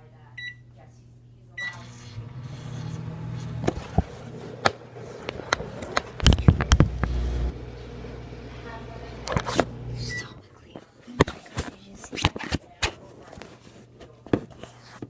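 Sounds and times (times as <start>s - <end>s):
microwave keypad beep: 0.4s - 0.6s, 1.6s - 1.9s
microwave oven humming: 1.6s - 10.4s.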